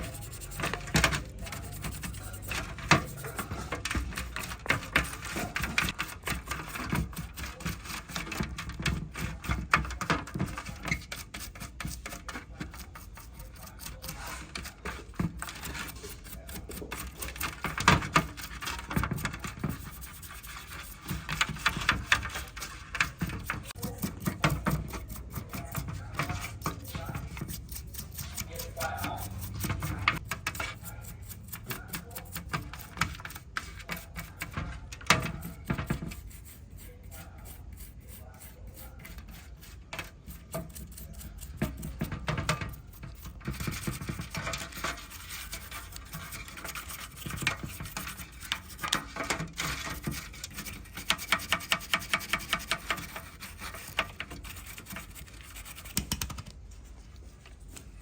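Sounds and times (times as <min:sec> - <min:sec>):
hand tools scraping and tapping: 0:00.0 - 0:58.0.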